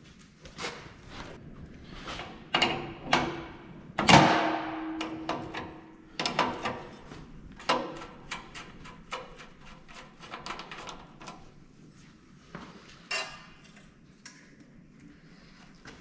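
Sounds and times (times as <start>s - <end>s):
loud metal clank ringing: 4.0s - 5.5s.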